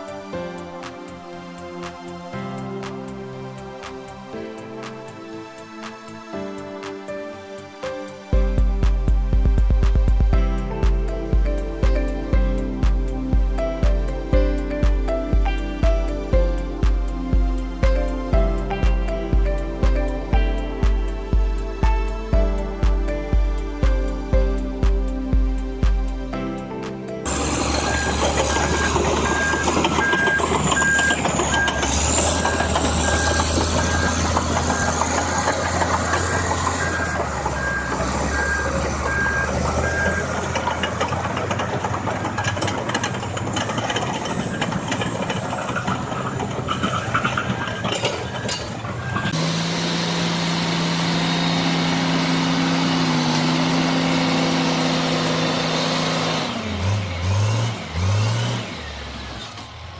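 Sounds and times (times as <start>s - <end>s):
heavy machine engine running: 9.5s - 59.9s
reversing alarm beeping: 27.3s - 41.2s
machine engine steady pitch: 27.3s - 47.8s.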